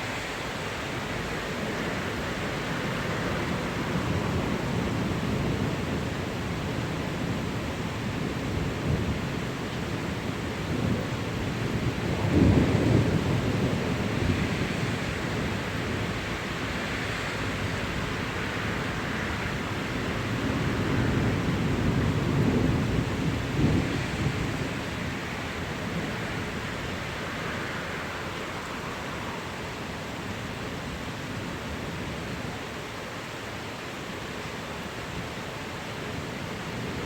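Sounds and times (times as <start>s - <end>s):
steady rain falling: 0.0s - 37.0s
thunder rumbling: 3.2s - 16.8s, 19.6s - 29.6s.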